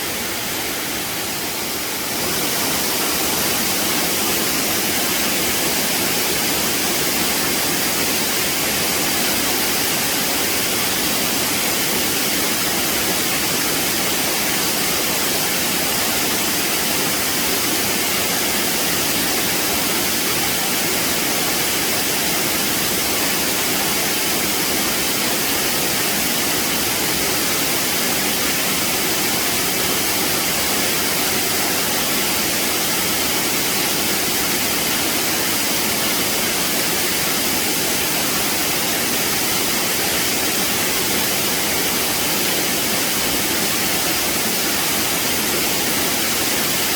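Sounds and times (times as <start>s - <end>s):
waterfall rushing: 0.0s - 46.9s.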